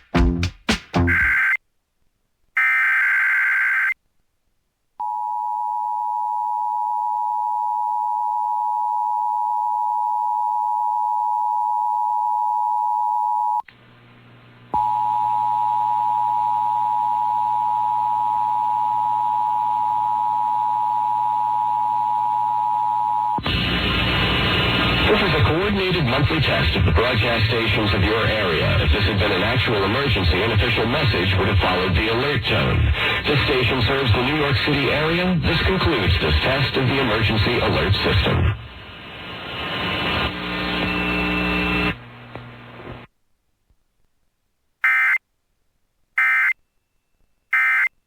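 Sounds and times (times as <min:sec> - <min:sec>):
two-tone alarm: 0:44.8 - 0:45.2, 0:46.2 - 0:46.6, 0:47.5 - 0:47.9.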